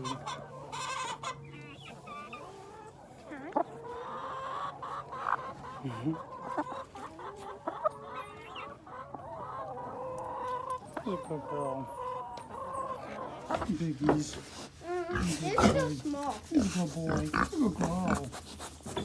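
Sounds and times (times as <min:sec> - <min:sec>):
chickens clucking: 0:00.0 - 0:19.0.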